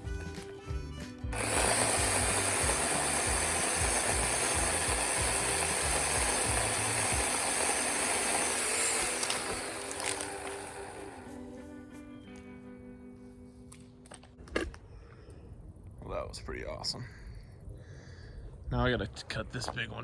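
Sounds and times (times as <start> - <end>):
background music with bass line: 0.0 - 7.3
electric chainsaw cutting wood: 1.3 - 11.7.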